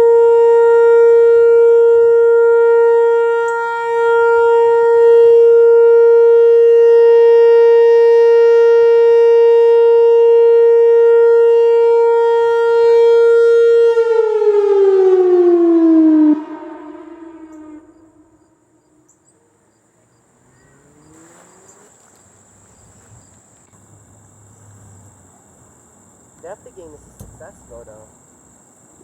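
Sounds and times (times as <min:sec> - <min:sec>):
warning siren winding down: 0:00.0 - 0:21.9.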